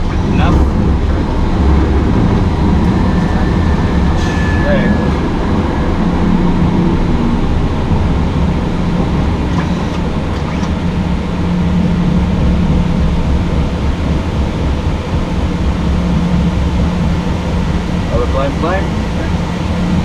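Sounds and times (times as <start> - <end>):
airflow rush: 0.0 - 20.0
jet engine noise: 0.0 - 20.0
low hum: 0.0 - 20.0.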